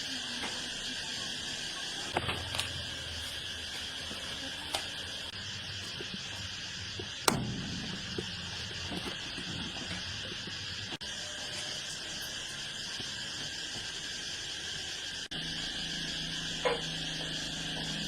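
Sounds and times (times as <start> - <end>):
insects chirring: 0.0 - 18.0
sharp knocks: 7.3 - 10.3.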